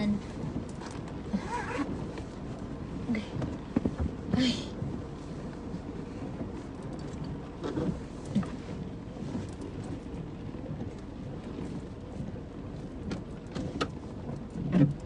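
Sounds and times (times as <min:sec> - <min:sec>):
low rumbling: 0:00.0 - 0:15.0
steady rain: 0:00.0 - 0:15.0.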